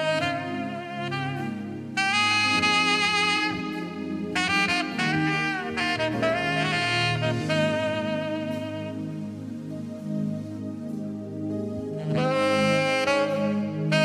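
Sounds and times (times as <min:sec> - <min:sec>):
keyboard accompaniment: 0:00.0 - 0:14.0
saxophone slow melody: 0:00.0 - 0:14.0.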